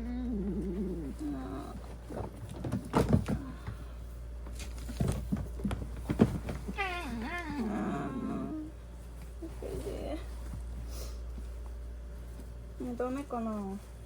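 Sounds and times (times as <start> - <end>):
knocks and thumps: 2.0 - 3.8, 4.8 - 6.8.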